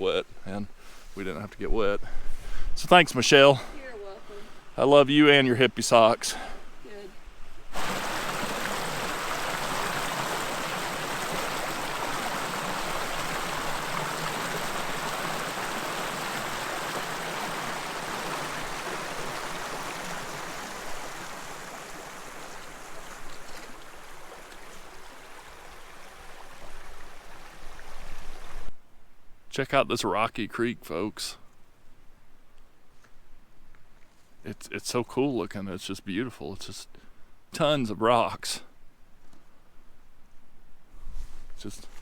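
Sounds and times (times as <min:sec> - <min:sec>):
creek water rushing over stones: 0:07.7 - 0:28.7.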